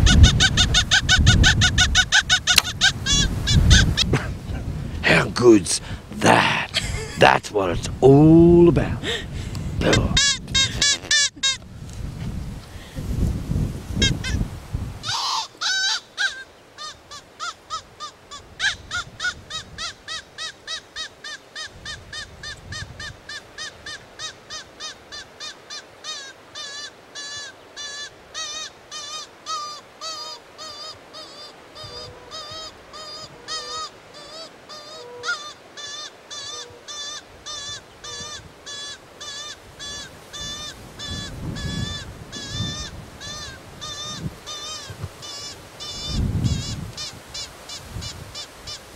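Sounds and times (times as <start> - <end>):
predator call squeals: 9.9 - 11.6, 15.0 - 21.1, 23.3 - 48.8.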